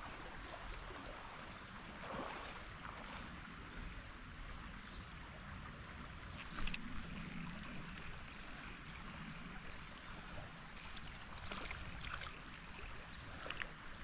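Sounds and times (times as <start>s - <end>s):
creek water running: 0.0s - 14.0s
faint light ticks: 6.4s - 7.7s.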